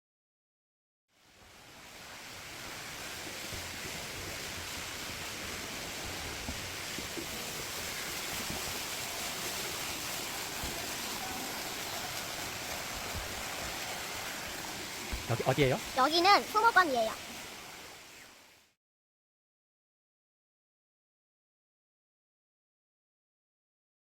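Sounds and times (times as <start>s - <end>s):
steady rushing hiss: 1.2s - 18.8s.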